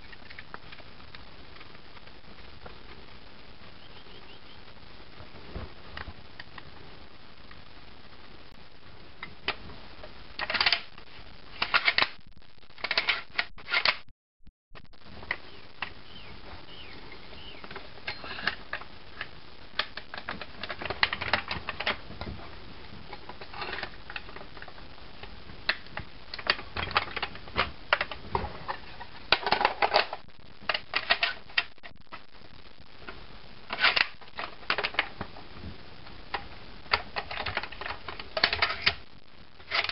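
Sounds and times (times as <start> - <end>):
rifle parts clicking and rattling: 10.4 - 10.9, 11.6 - 12.2, 12.8 - 14.0, 18.1 - 22.0, 26.4 - 31.7, 33.7 - 35.1, 36.3 - 39.0, 39.7 - 39.9.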